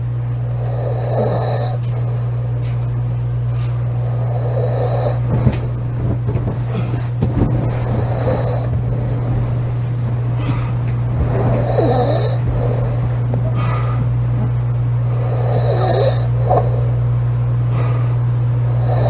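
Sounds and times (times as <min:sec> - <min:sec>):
low hum: 0:00.0 - 0:19.0
woman snoring: 0:00.4 - 0:01.8, 0:04.0 - 0:05.2, 0:07.9 - 0:08.7, 0:11.4 - 0:12.9, 0:15.1 - 0:16.9, 0:17.8 - 0:19.0.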